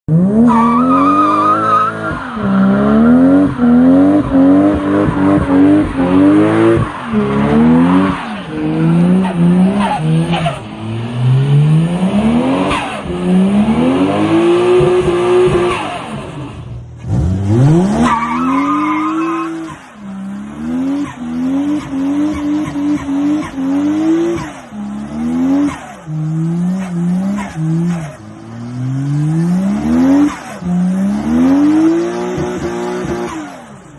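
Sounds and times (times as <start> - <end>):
car engine revving hard: 0.1 - 33.9.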